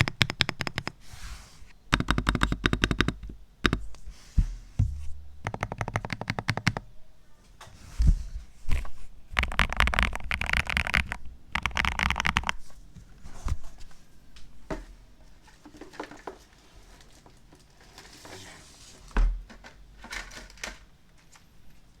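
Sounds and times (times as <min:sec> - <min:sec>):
mechanical keyboard typing: 0:00.0 - 0:01.0, 0:01.9 - 0:03.9, 0:05.4 - 0:06.8, 0:09.4 - 0:12.6
low thump: 0:04.4 - 0:05.4.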